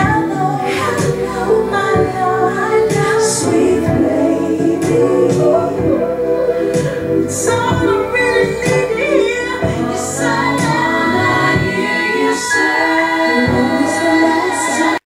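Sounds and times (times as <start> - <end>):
singing over a steady beat: 0.0 - 15.0.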